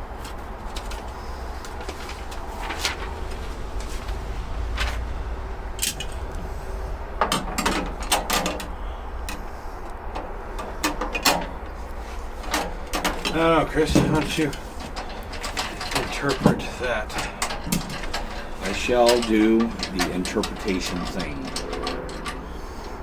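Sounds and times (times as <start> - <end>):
low steady rumble: 0.0 - 23.0
metal parts clicking and knocking: 5.8 - 6.3, 7.2 - 8.7, 12.4 - 23.0.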